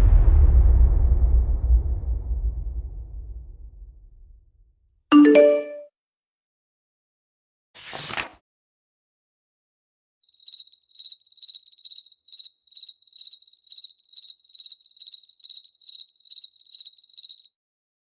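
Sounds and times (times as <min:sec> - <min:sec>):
cricket chirping: 0:10.3 - 0:17.5.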